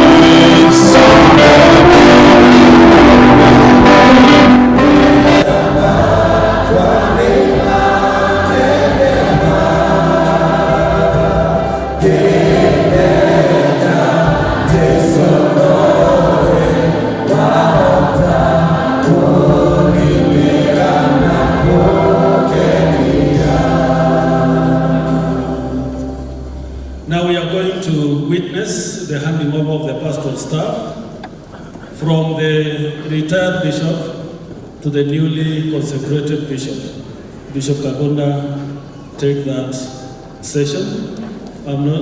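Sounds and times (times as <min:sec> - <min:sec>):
choir singing a gospel hymn: 0:00.0 - 0:27.6.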